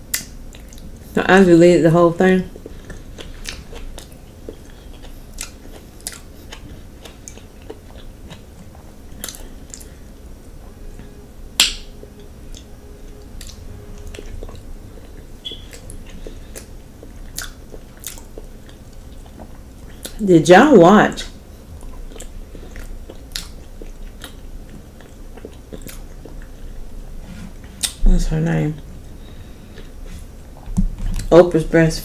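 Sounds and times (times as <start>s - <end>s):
person chewing: 0.0s - 1.1s, 2.5s - 20.2s, 21.2s - 28.0s, 28.8s - 31.3s.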